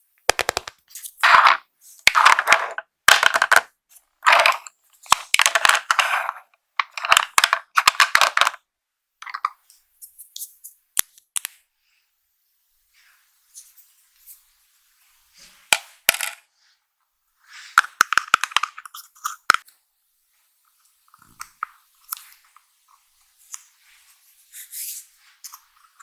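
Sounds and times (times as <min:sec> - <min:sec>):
sharp clicks and taps: 0:00.3 - 0:00.7.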